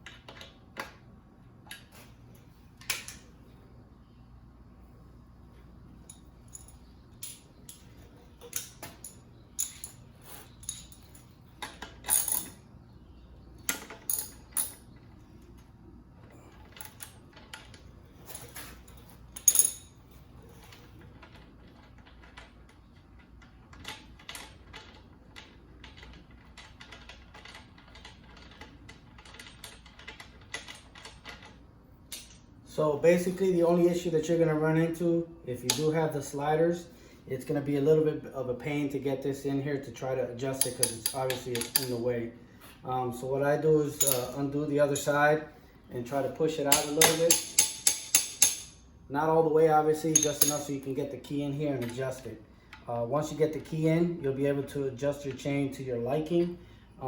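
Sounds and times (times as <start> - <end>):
metal tools clinking: 6.0 - 12.6, 13.7 - 14.9, 16.4 - 20.0, 40.5 - 42.0, 43.8 - 45.3, 46.6 - 48.8, 49.9 - 51.0.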